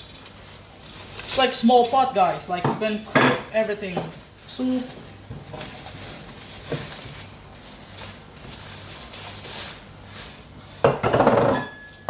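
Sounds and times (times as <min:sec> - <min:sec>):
packaging rustling: 0:00.0 - 0:10.8
metal cookware clatter: 0:10.9 - 0:12.0.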